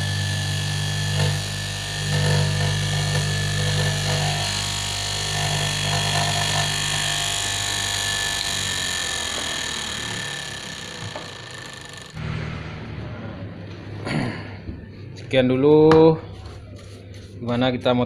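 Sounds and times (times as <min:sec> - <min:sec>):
fabric cutting machine motor hum: 0:00.0 - 0:13.8.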